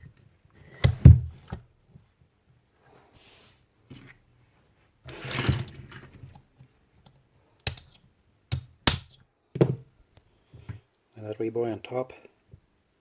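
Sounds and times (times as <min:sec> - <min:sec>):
metal parts rattling and scraping: 0:05.1 - 0:06.3.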